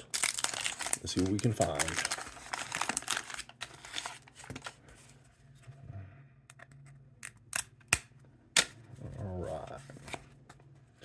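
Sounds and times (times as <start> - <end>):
wrapper crinkling: 0.0 - 4.8.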